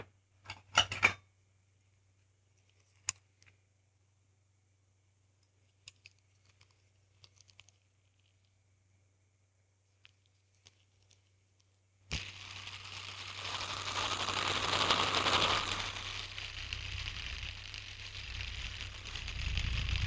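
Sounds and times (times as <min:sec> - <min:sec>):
hand spinner whirring rattle: 0:12.1 - 0:20.0.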